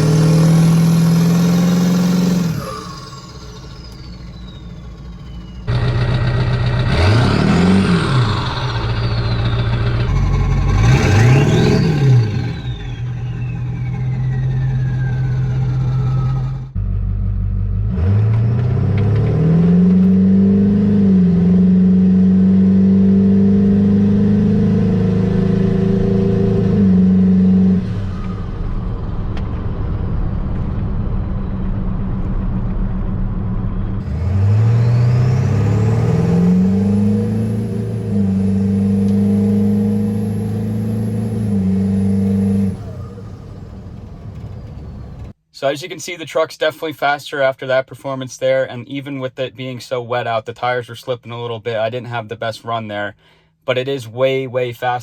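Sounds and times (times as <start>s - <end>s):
diesel truck engine accelerating: 0.0s - 45.4s.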